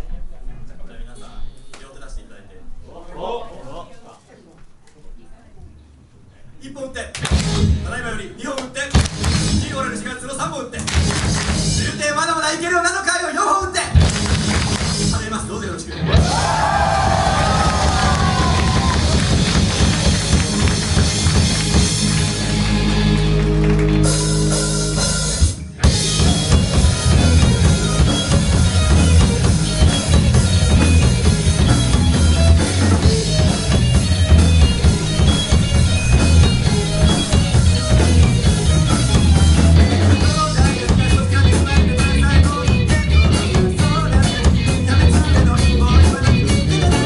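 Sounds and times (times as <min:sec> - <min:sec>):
rock band playing: 0:07.2 - 0:08.0, 0:08.9 - 0:10.0, 0:10.8 - 0:12.0, 0:13.9 - 0:47.0.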